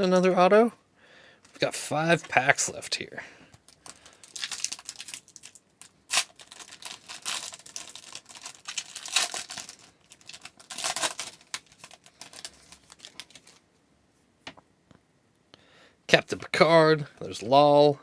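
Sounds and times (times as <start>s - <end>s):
card pack wrapper tearing and crinkling: 3.6s - 13.6s.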